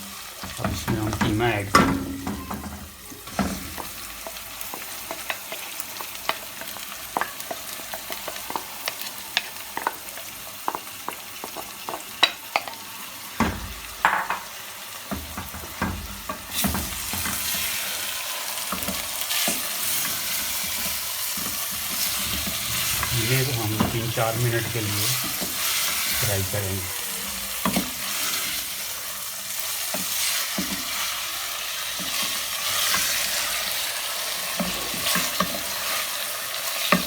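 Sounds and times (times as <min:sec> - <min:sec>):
meat sizzling in a pot: 0:00.0 - 0:37.0.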